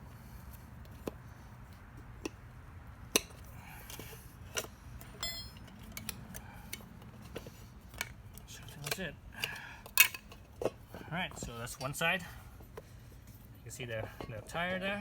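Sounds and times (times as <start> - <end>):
metal tire levers clinking on rim: 3.0 - 15.0.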